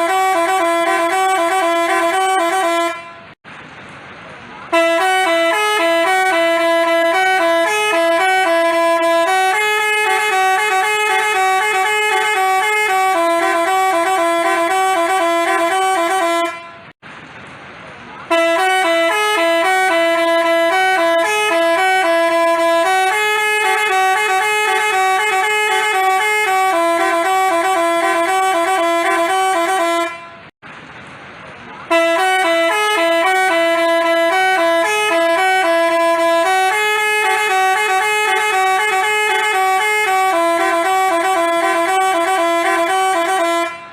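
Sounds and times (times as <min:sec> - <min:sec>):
musical bus horn melody: 0:00.0 - 0:03.4, 0:04.7 - 0:17.0, 0:18.3 - 0:30.6, 0:31.9 - 0:43.9.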